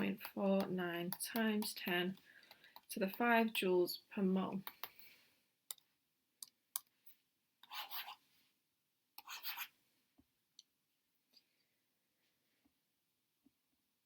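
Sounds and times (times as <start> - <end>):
scratchy rubbing sounds: 7.6 - 8.3, 9.2 - 9.8.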